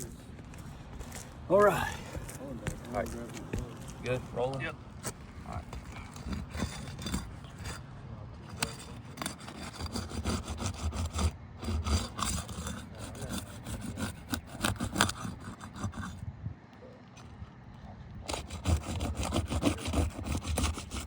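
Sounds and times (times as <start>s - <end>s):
tools scraping roof shingles: 4.0s - 16.2s, 18.3s - 21.0s.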